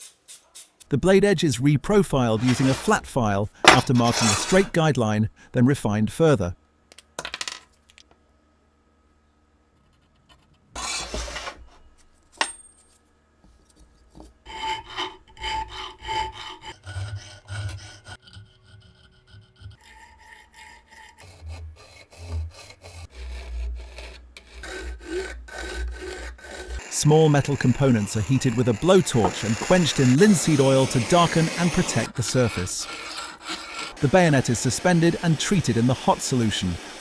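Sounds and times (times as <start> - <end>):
file rasping on steel blade: 2.4 - 2.9, 3.7 - 4.7, 14.5 - 37.0.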